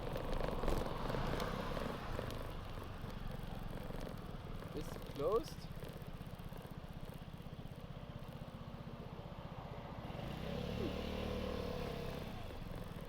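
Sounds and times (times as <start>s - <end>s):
scooter engine idling: 0.0s - 10.4s, 11.0s - 13.0s.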